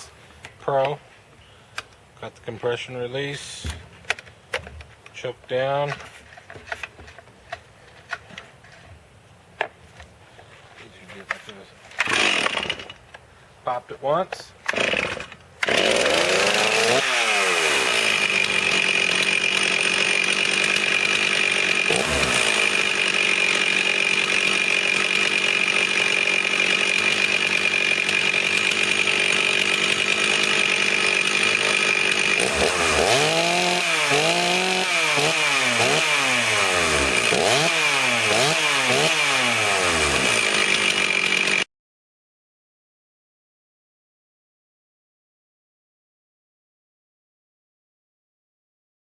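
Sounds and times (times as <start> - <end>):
chainsaw engine revving: 12.0 - 12.9, 14.6 - 41.7.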